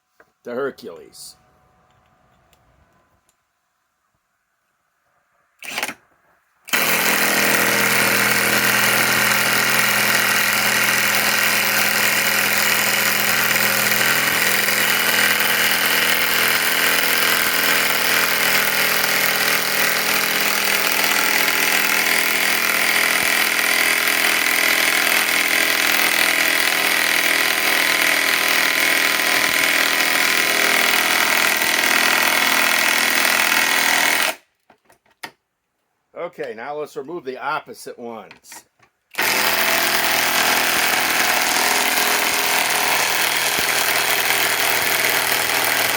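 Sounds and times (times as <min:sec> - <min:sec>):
impact wrench hammering: 0:06.7 - 0:34.4, 0:39.2 - 0:45.9.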